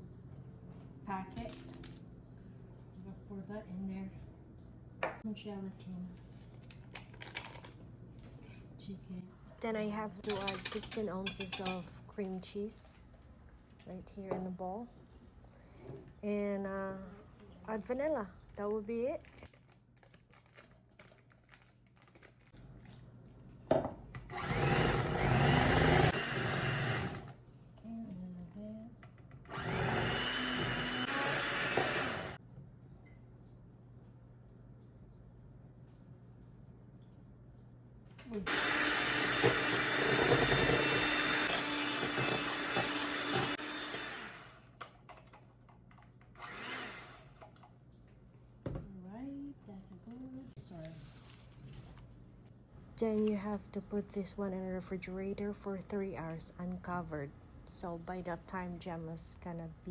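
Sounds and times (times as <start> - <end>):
electric mixer running: 24.3 - 27.3, 29.5 - 32.4, 38.4 - 44.7, 46.4 - 47.4.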